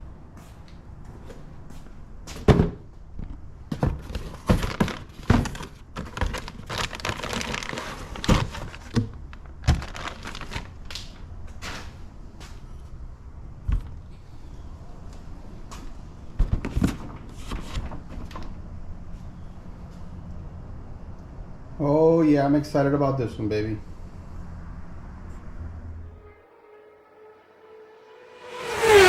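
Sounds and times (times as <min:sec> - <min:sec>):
packaging crinkling: 0:04.3 - 0:11.0.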